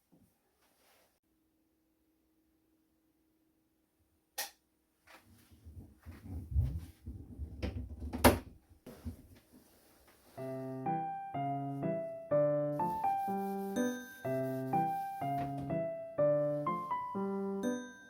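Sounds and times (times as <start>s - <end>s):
sharp click: 4.4s - 4.6s
piano music: 10.4s - 18.0s.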